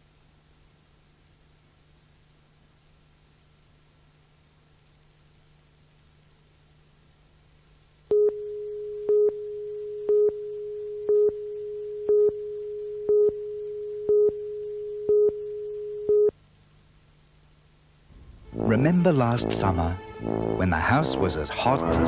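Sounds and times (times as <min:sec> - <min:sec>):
faint low hum: 0:00.0 - 0:22.0
steady electronic tone with beeps: 0:08.1 - 0:16.3.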